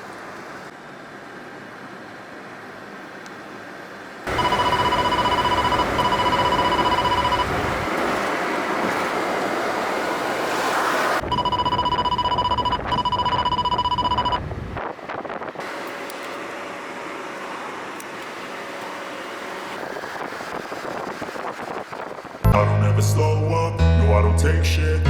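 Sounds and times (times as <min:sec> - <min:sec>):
electronic telephone ringing: 0:04.3 - 0:07.8, 0:11.2 - 0:14.5
steady rushing noise: 0:19.7 - 0:22.5.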